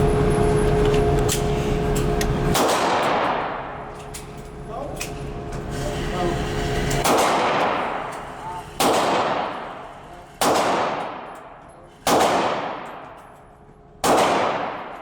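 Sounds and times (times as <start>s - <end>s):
pistol shots with echo: 2.5s - 3.8s, 7.0s - 8.2s, 8.8s - 13.2s, 14.0s - 15.0s.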